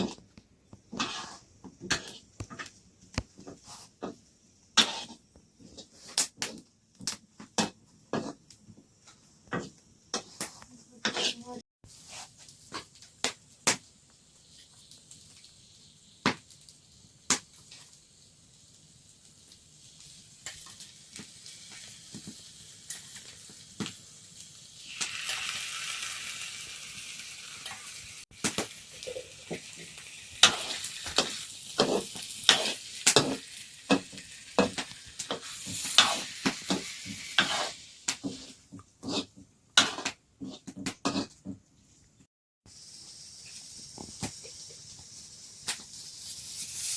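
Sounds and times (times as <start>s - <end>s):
food sizzling in a pan: 0.0s - 41.4s, 42.7s - 46.9s
utensil scraping in pan: 0.9s - 2.8s, 4.8s - 6.6s, 7.6s - 8.4s, 10.1s - 12.9s, 28.9s - 41.6s, 45.9s - 46.9s.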